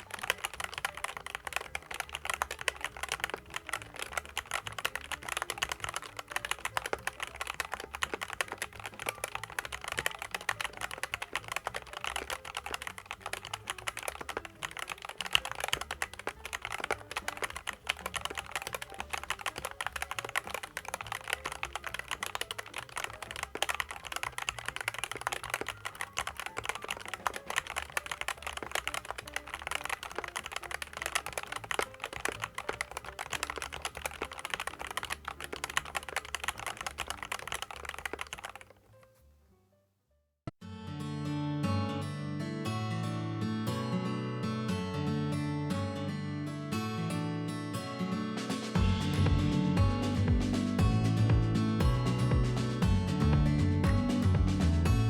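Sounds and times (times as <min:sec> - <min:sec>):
mechanical keyboard typing: 0:00.0 - 0:38.8.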